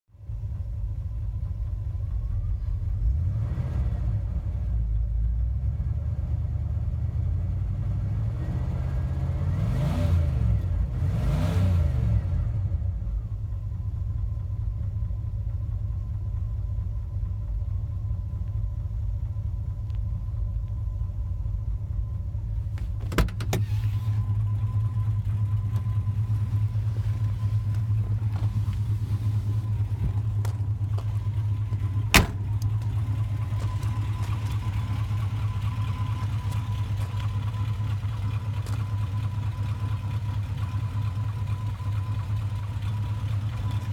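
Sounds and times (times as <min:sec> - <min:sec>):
car engine idling and revving: 0:00.1 - 0:43.9
engine idle knock: 0:00.3 - 0:03.2, 0:24.3 - 0:43.9
sharp engine clunk: 0:22.7 - 0:24.2, 0:31.7 - 0:34.6.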